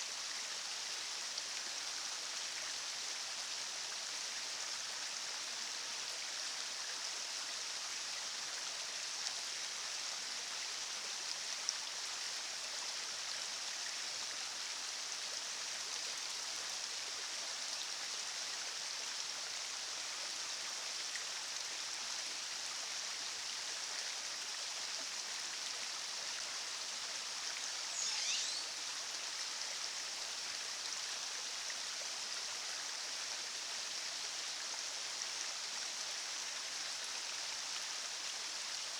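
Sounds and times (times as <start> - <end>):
high sweeping chirp: 27.9 - 28.8.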